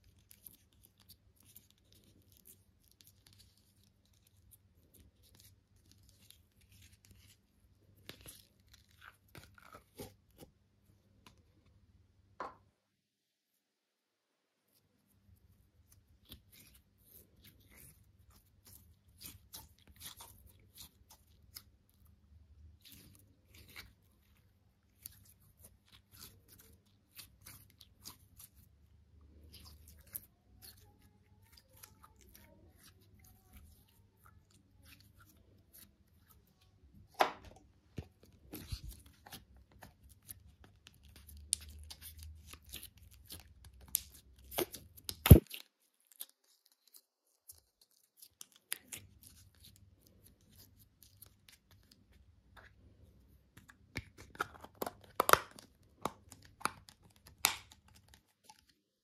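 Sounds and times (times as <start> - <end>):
slime crunching and crackling: 0.0 - 10.5, 15.3 - 52.9, 53.5 - 58.8
sharp slime snap: 43.9 - 45.6.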